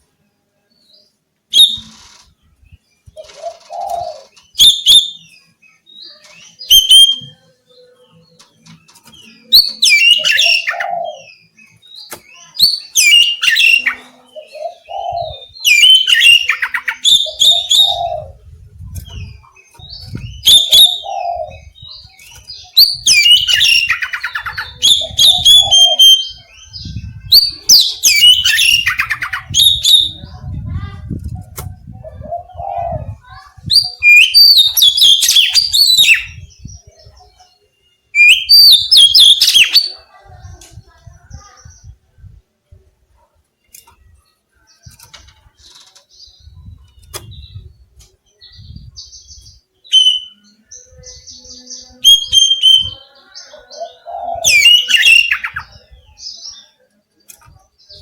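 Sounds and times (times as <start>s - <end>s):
bird whistling and chattering song: 1.5s - 2.1s, 3.2s - 5.3s, 6.0s - 7.4s, 8.9s - 11.3s, 12.0s - 30.3s, 33.7s - 37.2s, 38.2s - 40.0s, 48.4s - 53.1s, 53.8s - 56.4s.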